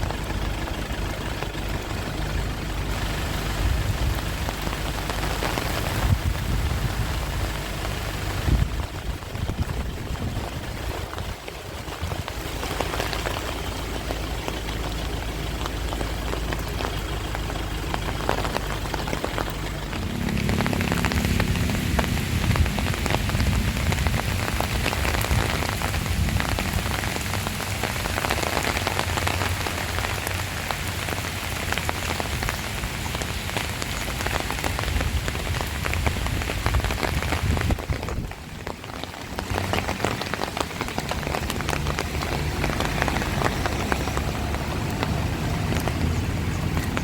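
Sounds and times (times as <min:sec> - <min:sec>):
low steady hum: 0:00.0 - 0:27.5
heavy rain pelting: 0:00.0 - 0:47.0.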